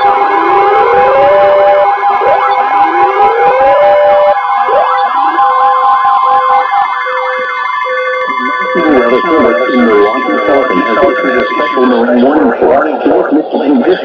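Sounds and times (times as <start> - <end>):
siren wailing: 0.0 - 14.0
siren yelping: 0.0 - 14.0
steady siren tones: 0.0 - 14.0.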